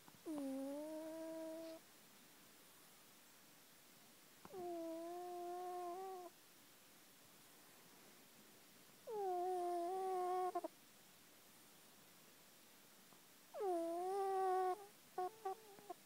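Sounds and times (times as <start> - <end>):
cat snoring: 0.2 - 1.8, 4.5 - 6.3, 9.1 - 10.7, 13.6 - 16.0.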